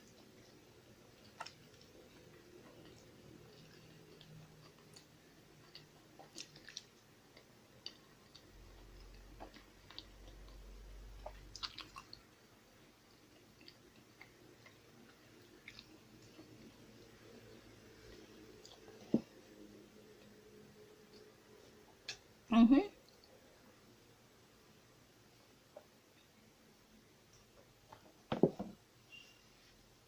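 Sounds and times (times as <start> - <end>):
chewing food: 0.0 - 22.3
mouth clicks and smacks: 11.2 - 12.2.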